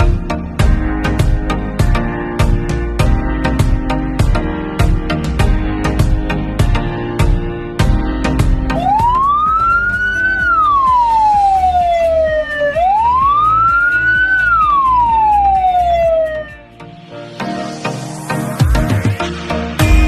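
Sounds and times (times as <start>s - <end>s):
background music with steady beat: 0.0s - 20.0s
ambulance siren wailing: 8.7s - 16.7s.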